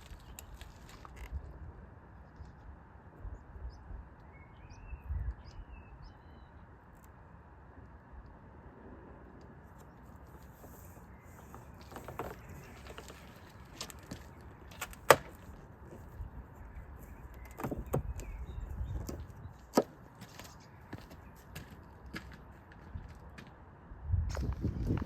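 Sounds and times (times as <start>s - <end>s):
handling knocks and taps: 11.4s - 16.1s, 17.3s - 20.4s.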